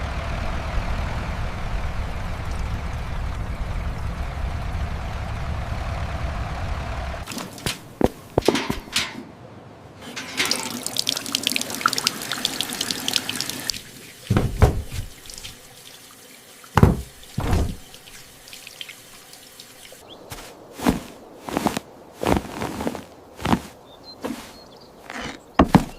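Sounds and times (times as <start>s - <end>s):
tap water splashing into sink: 10.2s - 15.6s, 16.7s - 19.0s
knocks: 14.3s - 15.6s, 16.8s - 17.9s, 25.6s - 25.9s.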